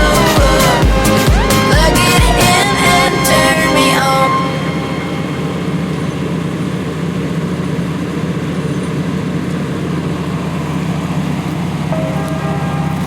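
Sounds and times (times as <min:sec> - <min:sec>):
diesel engine running: 0:00.0 - 0:13.0.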